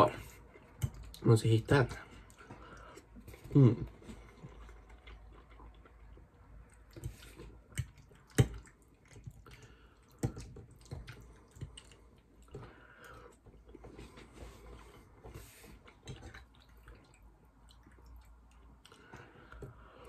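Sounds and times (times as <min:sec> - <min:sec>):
wet mouth clicks and smacks chewing: 0:04.4 - 0:12.6.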